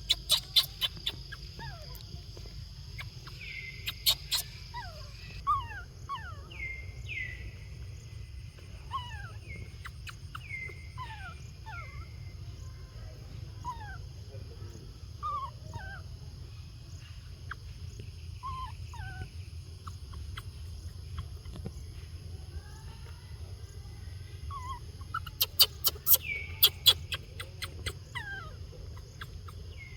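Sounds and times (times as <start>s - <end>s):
baby monkey calling: 0.0s - 2.1s, 2.9s - 7.3s, 8.6s - 12.2s, 13.6s - 14.1s, 15.1s - 16.1s, 18.4s - 21.6s, 24.5s - 29.9s.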